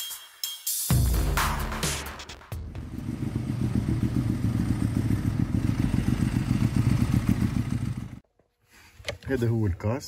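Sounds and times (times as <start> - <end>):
engine idling rumble: 2.7 - 8.2.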